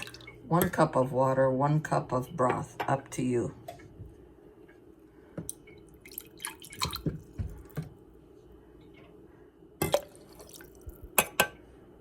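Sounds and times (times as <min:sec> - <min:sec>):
faint steady hum: 0:00.0 - 0:12.0
liquid dripping and splashing: 0:05.4 - 0:07.9.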